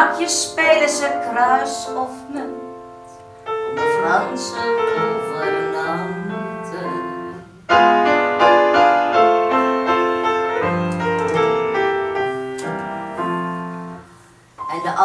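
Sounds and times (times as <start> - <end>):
woman singing: 0.0 - 2.8, 3.7 - 7.5
piano playing: 0.0 - 15.0.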